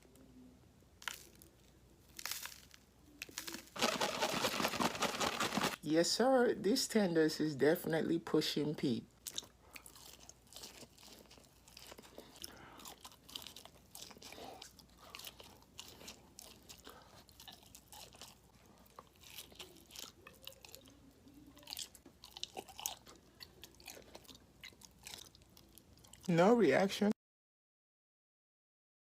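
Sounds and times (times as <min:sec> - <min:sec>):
person chewing crispy food: 0:01.0 - 0:05.8, 0:09.2 - 0:26.3.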